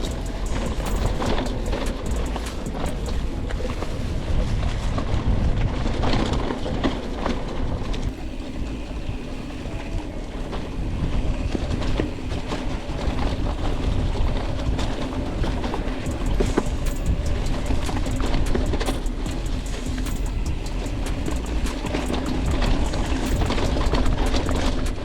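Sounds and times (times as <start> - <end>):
wind rumble on microphone: 0.0 - 25.0
bike parts rattling and knocking: 11.8 - 25.0.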